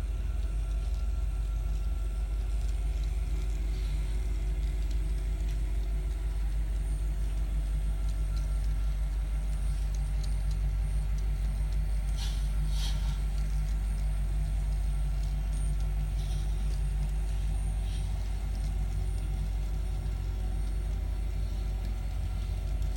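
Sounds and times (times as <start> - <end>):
light ticks: 0.3 - 22.9.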